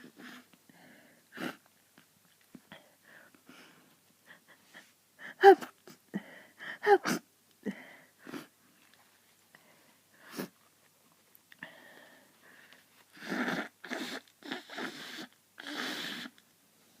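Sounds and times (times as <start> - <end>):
person sniffling: 10.2 - 10.6.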